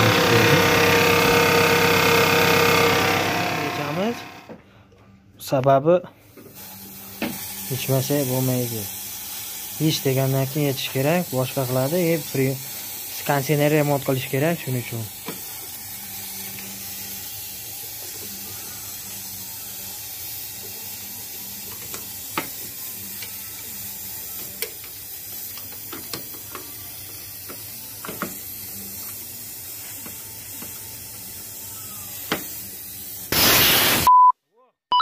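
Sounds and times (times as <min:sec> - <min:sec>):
car engine running: 0:00.0 - 0:04.4.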